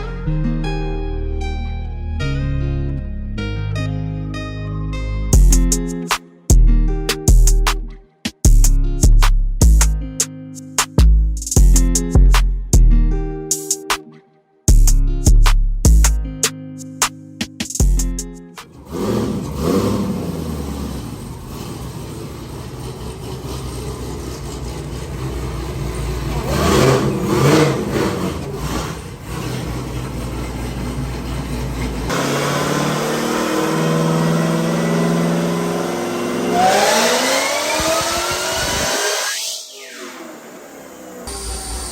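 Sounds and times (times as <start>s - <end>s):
car engine revving: 18.6s - 41.9s.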